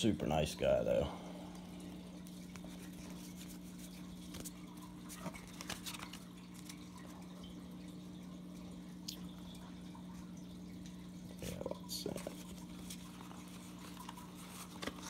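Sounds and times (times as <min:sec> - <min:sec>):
trading cards flipped through: 0:02.5 - 0:06.8, 0:12.8 - 0:15.0.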